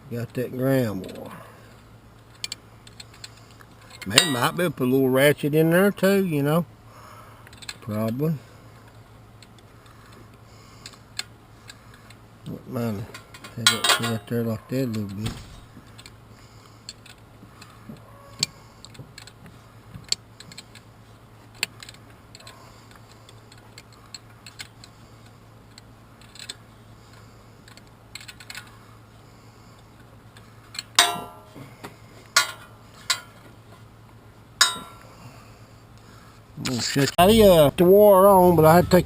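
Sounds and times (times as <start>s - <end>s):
faint low hum: 0.0s - 39.0s
ringing metallic clanks: 4.0s - 4.7s, 13.1s - 14.4s, 30.9s - 31.7s, 32.4s - 33.4s, 34.6s - 35.2s
hand tools clicking on metal: 13.1s - 14.3s, 21.5s - 25.0s, 30.3s - 31.7s, 32.3s - 33.4s, 34.6s - 35.2s.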